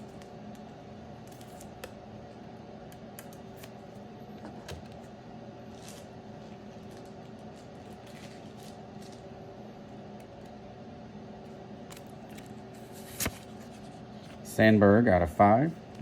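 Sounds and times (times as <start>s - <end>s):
trading cards rustling: 0.0s - 2.0s, 5.7s - 9.3s
steady low hum: 0.0s - 16.0s.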